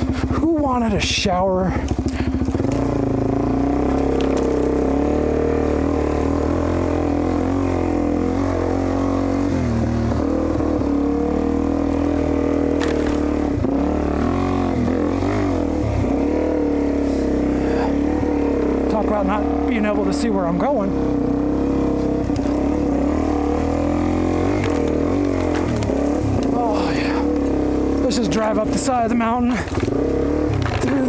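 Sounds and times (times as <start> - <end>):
dirt bike engine revving: 0.0 - 31.0.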